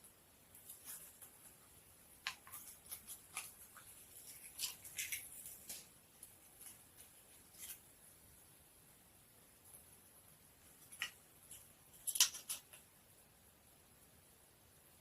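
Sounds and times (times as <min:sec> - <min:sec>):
small objects clicking and crinkling: 0:02.2 - 0:07.8, 0:10.8 - 0:12.8.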